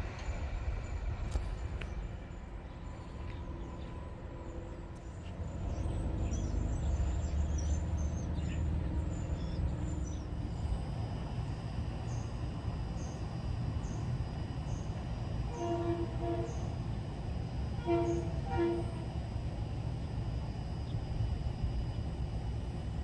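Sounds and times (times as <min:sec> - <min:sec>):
train rumbling: 0:00.0 - 0:23.0
birds chirping: 0:05.4 - 0:21.7.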